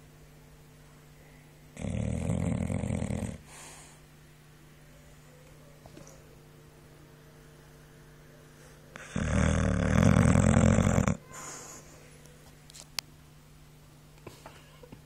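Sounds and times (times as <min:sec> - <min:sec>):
dog snoring: 0:01.8 - 0:03.7, 0:09.0 - 0:11.2.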